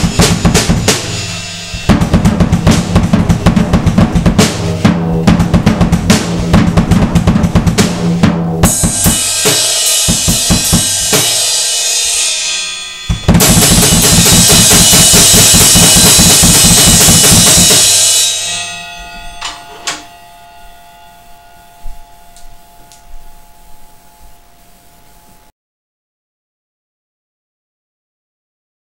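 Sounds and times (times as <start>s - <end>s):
drum kit played fast: 0.0s - 20.0s
cymbals crashing: 0.0s - 25.5s.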